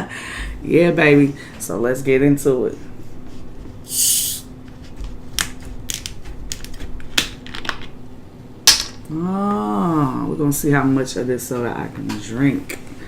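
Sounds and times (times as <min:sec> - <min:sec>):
soda can fizzing hiss: 0:03.9 - 0:04.4.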